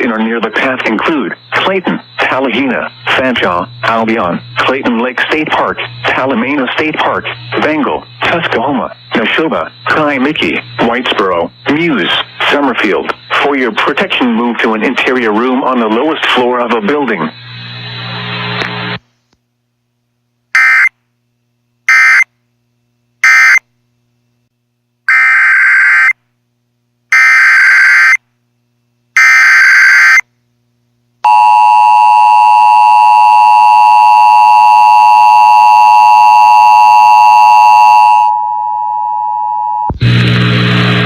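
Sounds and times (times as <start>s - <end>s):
loud steady electronic alert tone: 0.0s - 17.3s, 20.6s - 20.9s, 21.9s - 22.3s, 23.2s - 23.6s, 25.1s - 26.2s, 27.1s - 28.2s, 29.2s - 30.2s, 31.3s - 40.0s
screeching digital data bursts: 0.0s - 17.6s, 20.6s - 20.9s, 25.1s - 26.2s, 29.2s - 30.2s
burst of static: 0.0s - 19.0s, 39.9s - 41.0s.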